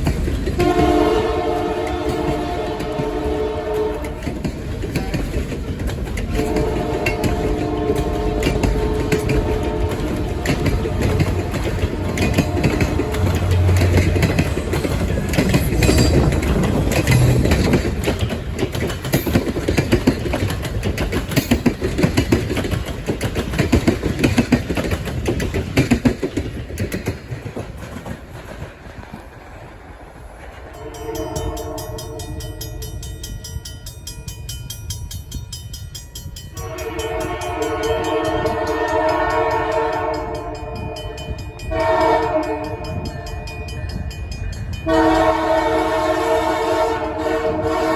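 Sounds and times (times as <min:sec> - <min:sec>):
train wheels clattering over rails: 0:00.0 - 0:47.9
locomotive air horn: 0:00.6 - 0:04.4, 0:06.4 - 0:14.4, 0:30.8 - 0:32.5, 0:36.6 - 0:43.1, 0:44.8 - 0:47.9.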